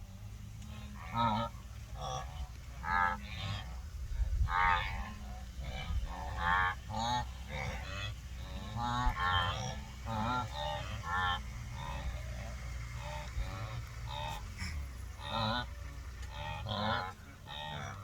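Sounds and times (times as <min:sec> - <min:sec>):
wildebeest honking grunts: 0:00.0 - 0:18.0.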